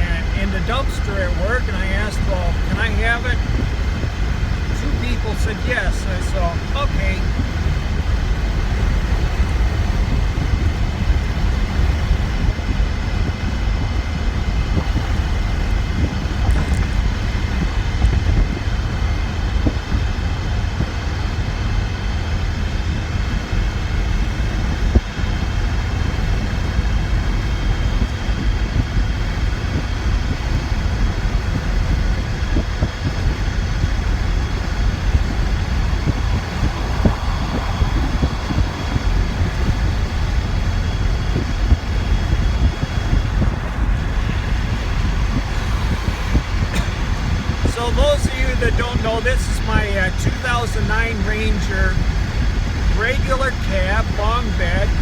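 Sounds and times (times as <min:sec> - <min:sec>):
faint high whine: 0:00.0 - 0:55.0
road and wind rumble: 0:00.0 - 0:55.0.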